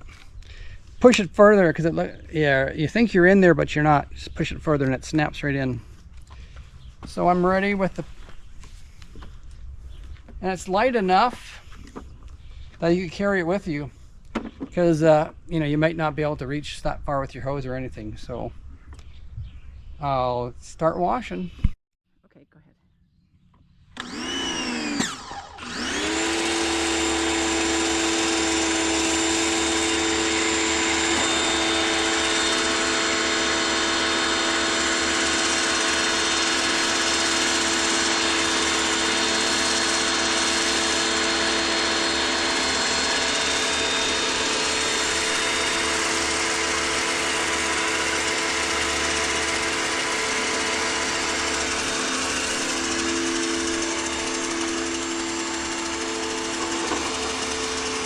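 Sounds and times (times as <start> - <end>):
pressure washer motor whine: 24.0 - 58.0.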